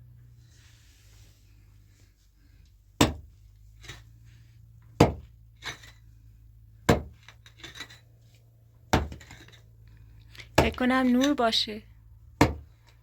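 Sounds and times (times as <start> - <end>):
hand tool striking hard object: 3.0 - 3.3, 5.0 - 5.3, 6.9 - 7.3, 8.9 - 9.6, 10.6 - 11.4, 12.4 - 12.7.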